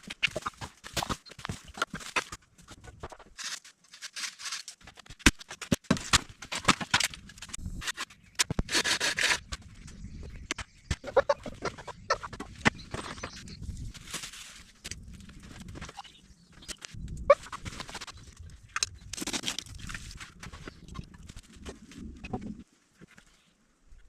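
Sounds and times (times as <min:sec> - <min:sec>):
twigs scraping rush: 0:00.0 - 0:24.0.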